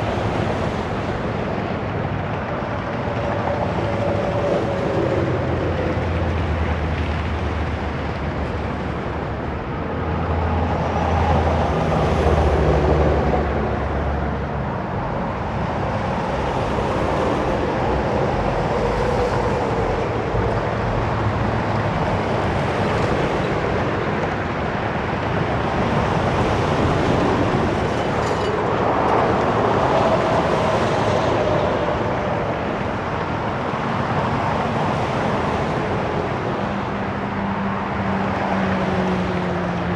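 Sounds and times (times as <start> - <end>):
highway traffic: 0.0 - 39.9
trucks rumbling past: 0.0 - 39.9
vehicles passing: 0.0 - 39.9.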